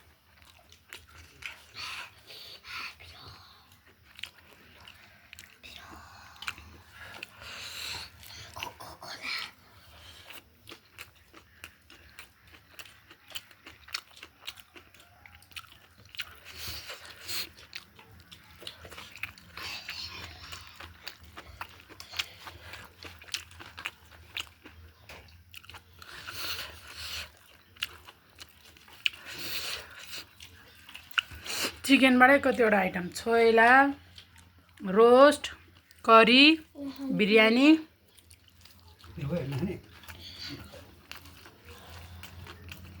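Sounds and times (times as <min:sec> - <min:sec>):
person biting and chewing: 0:10.2 - 0:31.8, 0:38.2 - 0:43.0.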